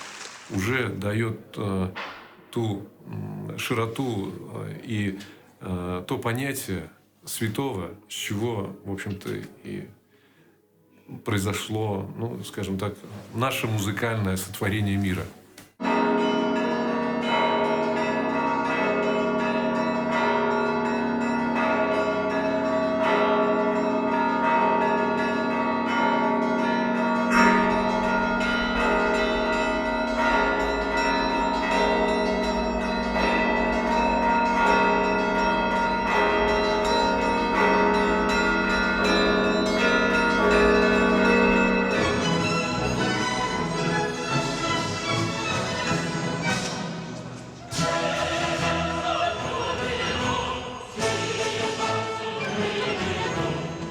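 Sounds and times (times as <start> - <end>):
church bells ringing: 0.0 - 5.4, 15.8 - 50.4
low rumble: 27.4 - 42.2.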